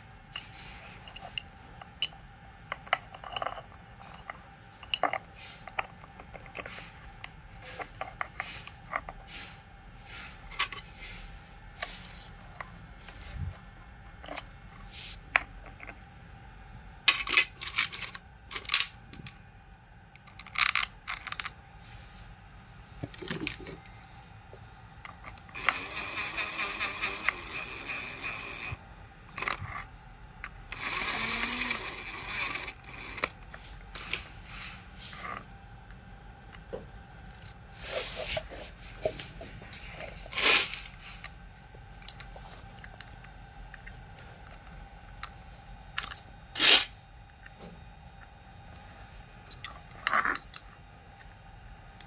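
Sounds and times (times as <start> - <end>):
metal parts clinking on workbench: 17.1 - 19.0.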